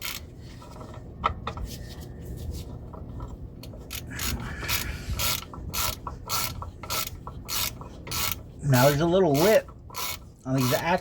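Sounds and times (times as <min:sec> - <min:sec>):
ratchet wrench turning: 0:00.0 - 0:00.3, 0:03.6 - 0:11.0.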